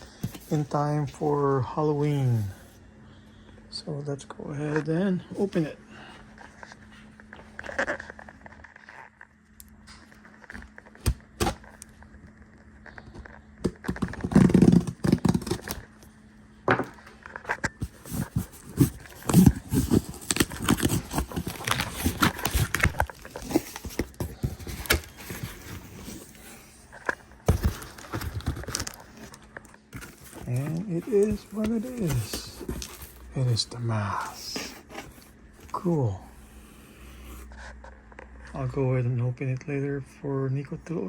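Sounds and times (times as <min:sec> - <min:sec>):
cardboard box being opened: 0:13.7 - 0:15.8, 0:17.7 - 0:37.6
packaging crinkling: 0:17.7 - 0:35.9.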